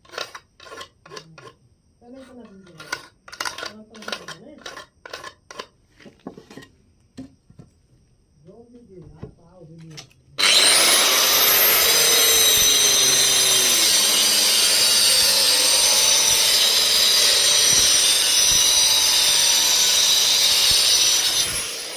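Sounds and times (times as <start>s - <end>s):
power tool whining: 10.4s - 21.9s
loud hiss: 10.5s - 21.9s.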